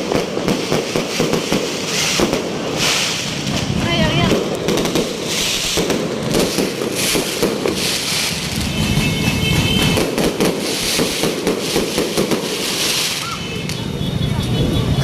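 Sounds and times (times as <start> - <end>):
fireworks crackling: 0.0 - 15.0.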